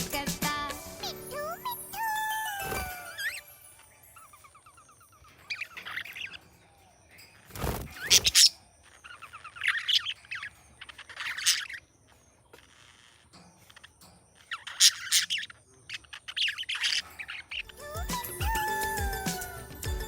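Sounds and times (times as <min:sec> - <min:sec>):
budgerigar chirping: 0:04.0 - 0:18.9
budgerigar harsh squawk: 0:12.6 - 0:17.8.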